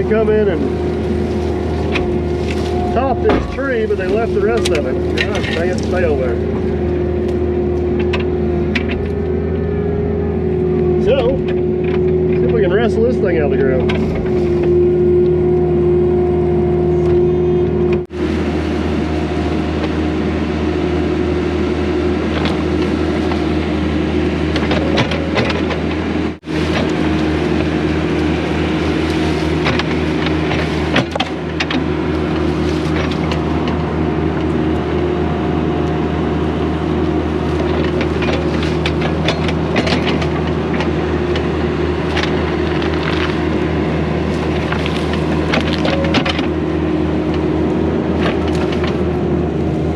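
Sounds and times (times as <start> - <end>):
diesel engine under hydraulic load: 0.0 - 49.9
cracks and knocks of wood: 29.4 - 34.5, 37.6 - 41.5, 42.1 - 43.5, 44.4 - 46.6.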